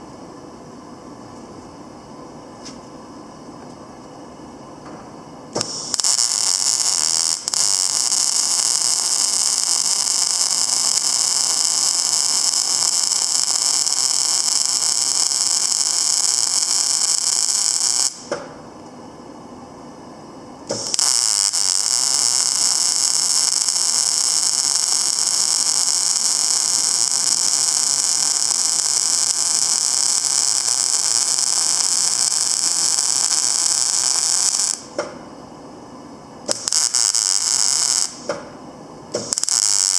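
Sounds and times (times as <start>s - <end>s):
welding arc hissing: 5.5s - 18.4s, 20.7s - 35.0s, 36.4s - 38.4s, 39.1s - 39.9s.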